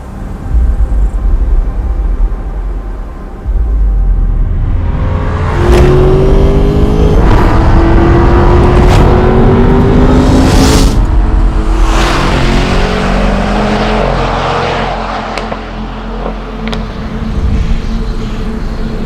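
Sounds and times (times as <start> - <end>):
car engine accelerating hard: 4.7 - 19.0
exhaust cracks: 15.2 - 17.5.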